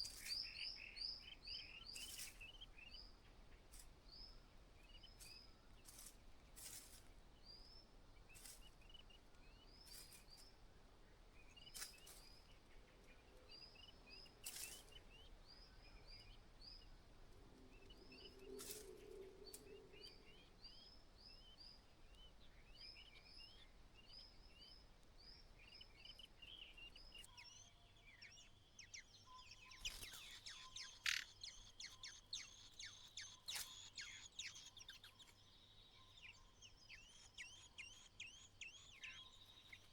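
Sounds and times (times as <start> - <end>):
faint high bird chirps: 17.8 - 39.9.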